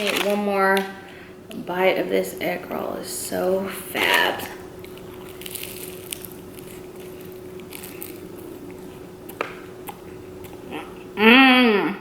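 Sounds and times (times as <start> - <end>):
chewing crispy food: 4.8 - 10.8.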